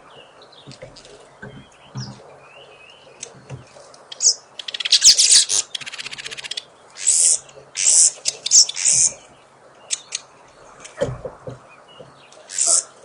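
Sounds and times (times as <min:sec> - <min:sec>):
birds whistled gliding calls: 0:01.4 - 0:11.0, 0:11.7 - 0:13.0
bird rapid chattering call: 0:04.1 - 0:09.2.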